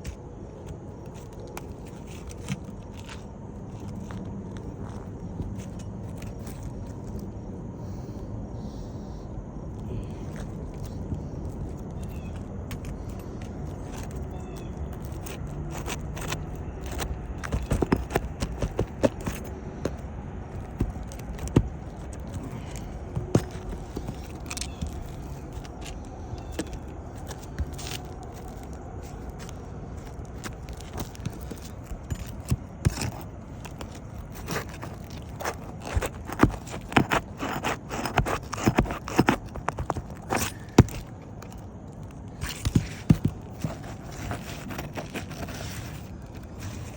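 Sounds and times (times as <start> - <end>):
hand tools scraping shingle: 10.0 - 46.9.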